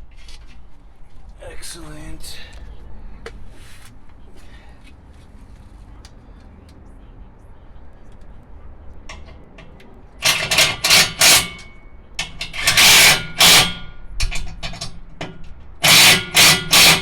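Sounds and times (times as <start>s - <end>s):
impact wrench bursts: 10.2s - 14.9s, 15.8s - 17.0s.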